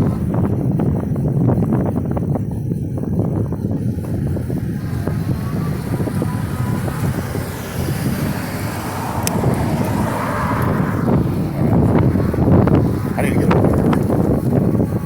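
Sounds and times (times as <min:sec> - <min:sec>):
road noise: 0:00.0 - 0:15.0
wind buffeting microphone: 0:00.0 - 0:15.0
faint rising whine: 0:03.6 - 0:15.0.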